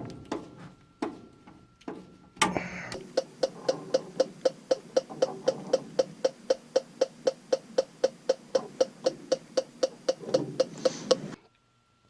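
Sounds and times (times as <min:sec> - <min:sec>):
music with ticking wood-block beat: 0:03.2 - 0:11.3.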